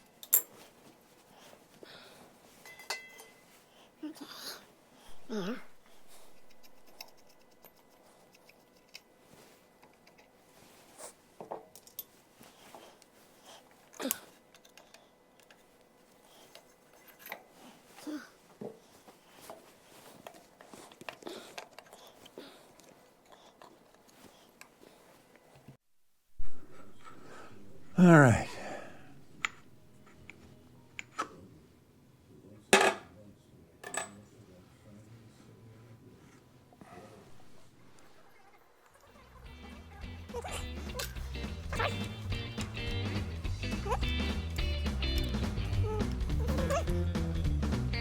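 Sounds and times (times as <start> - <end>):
metal parts and tools clicking: 0.1 - 0.6
metal tools clinking on workbench: 0.1 - 0.7, 2.6 - 3.4.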